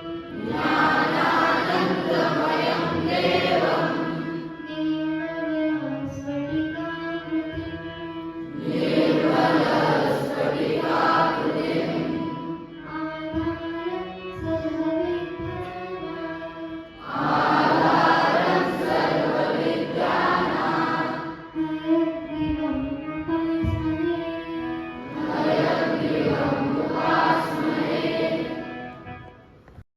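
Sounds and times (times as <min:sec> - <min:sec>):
choir singing with music: 0:00.2 - 0:04.6, 0:08.4 - 0:12.8, 0:16.9 - 0:21.7, 0:25.0 - 0:29.8.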